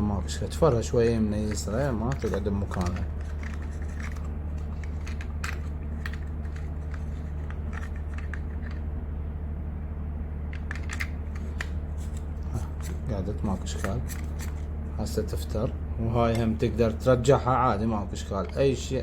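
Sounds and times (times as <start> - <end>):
steady low hum: 0.0 - 19.0
plastic parts clicking: 1.4 - 8.8, 10.5 - 11.8.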